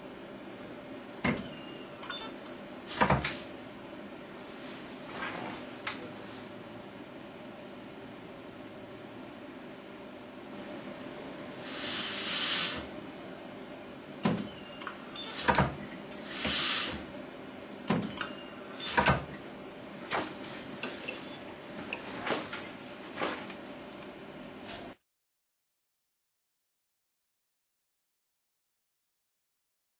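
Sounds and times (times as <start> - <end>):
compressed air hisses: 11.6 - 12.9, 16.2 - 17.1.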